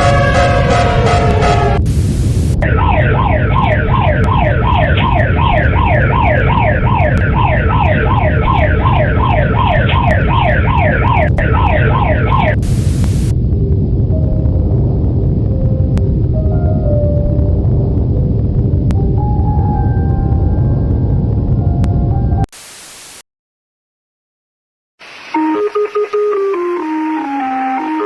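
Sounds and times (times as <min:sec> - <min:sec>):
electronic alert siren: 0:00.0 - 0:13.3, 0:25.4 - 0:28.0
bursts of static: 0:00.0 - 0:14.4, 0:22.5 - 0:23.2
steady low rumble: 0:00.0 - 0:22.5.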